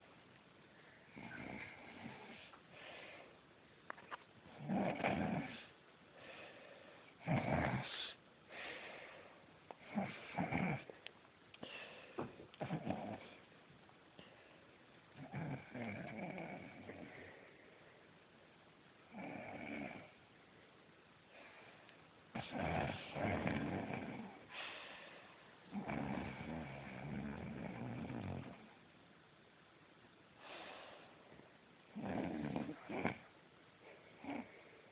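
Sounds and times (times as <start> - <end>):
quiet breaths: 0.0 - 29.0, 29.6 - 34.9
person snoring loudly: 1.1 - 2.4, 4.6 - 5.7, 7.2 - 7.9, 9.9 - 10.9, 15.2 - 17.1, 19.1 - 20.1, 22.4 - 24.4, 25.7 - 28.6, 31.9 - 33.3.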